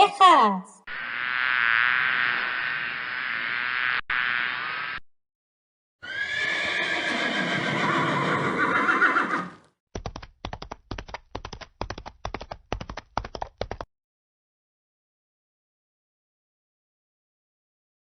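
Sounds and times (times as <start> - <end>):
horse neighing: 6.0 - 9.6
hooves clip-clopping: 10.0 - 13.9.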